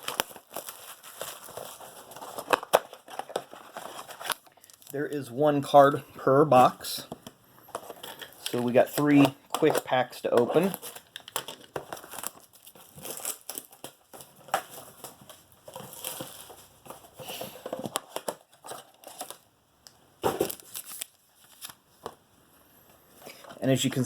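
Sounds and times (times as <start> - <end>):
plastic wrapping crinkling and tearing: 0.0 - 5.2, 7.7 - 19.5, 20.3 - 21.9.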